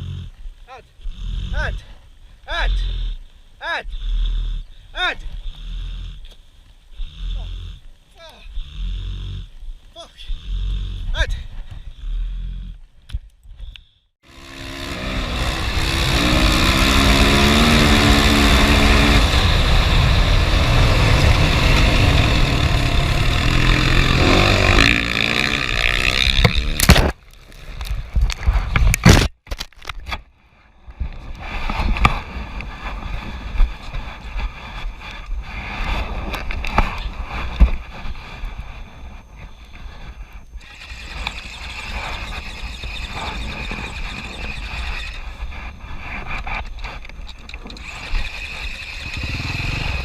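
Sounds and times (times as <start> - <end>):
road noise: 14.2 - 27.2, 40.6 - 50.0
vehicle engine running loudly: 14.3 - 26.9, 47.8 - 50.0.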